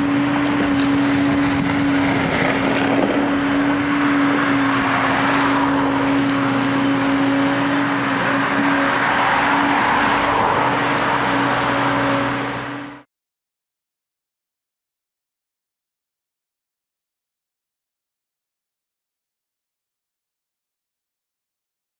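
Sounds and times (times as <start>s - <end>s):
diesel engines running under load: 0.0s - 13.0s.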